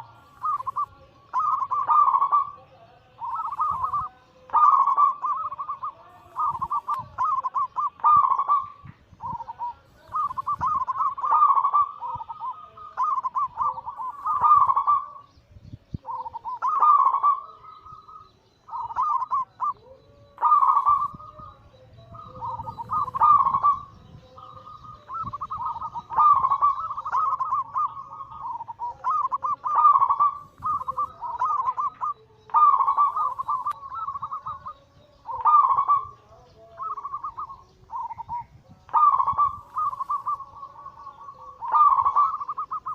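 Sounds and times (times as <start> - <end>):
doves cooing: 0.0 - 42.9.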